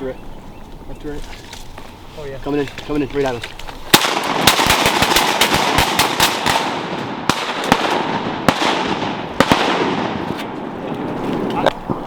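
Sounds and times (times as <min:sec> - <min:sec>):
gunshot echo: 0:03.9 - 0:10.6
shotguns firing: 0:03.9 - 0:10.6.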